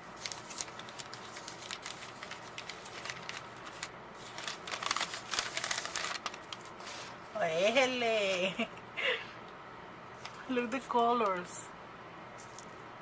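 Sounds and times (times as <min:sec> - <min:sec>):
paper wrapping crinkling and tearing: 0:00.1 - 0:07.2.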